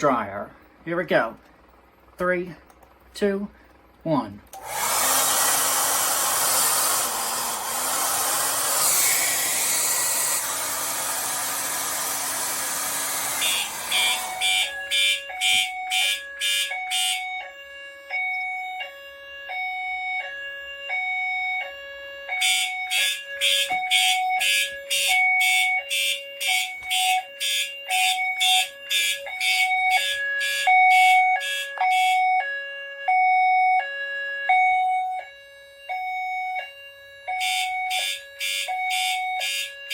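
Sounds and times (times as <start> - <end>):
hair dryer blowing: 4.6 - 14.8
pulsing alarm horn: 4.6 - 39.9
alternating two-tone signal: 7.0 - 33.9, 34.5 - 39.9.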